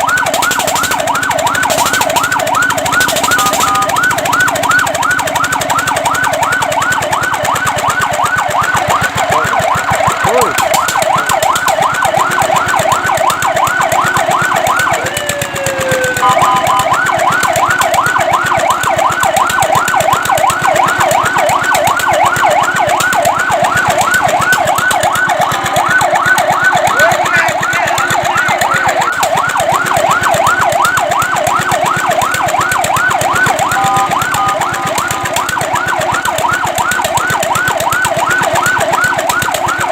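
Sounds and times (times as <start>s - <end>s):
fire truck siren yelping: 0.0s - 39.9s.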